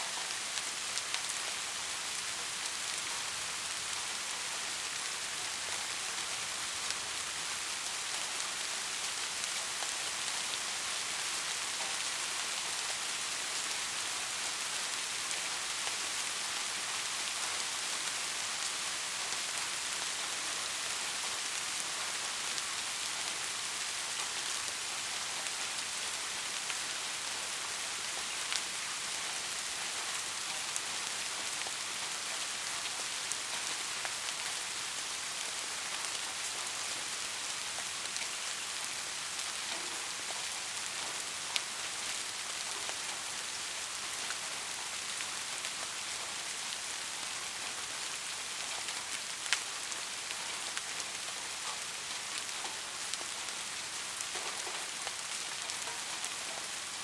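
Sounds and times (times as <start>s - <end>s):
heavy rain hissing: 0.0s - 57.0s.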